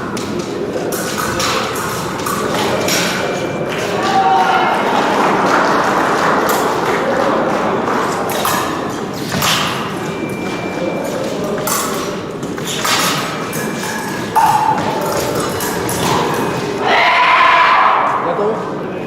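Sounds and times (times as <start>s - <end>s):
fencing blades knocking: 0.0s - 4.2s, 8.0s - 10.1s, 11.2s - 16.8s
hall noise: 0.0s - 19.0s
voices: 0.0s - 19.0s.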